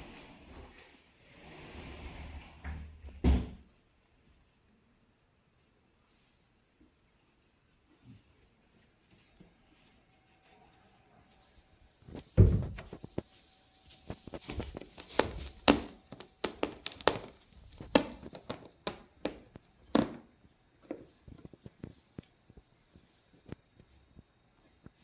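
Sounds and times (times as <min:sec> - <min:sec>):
boxes and baskets thudding: 0:12.3 - 0:13.0.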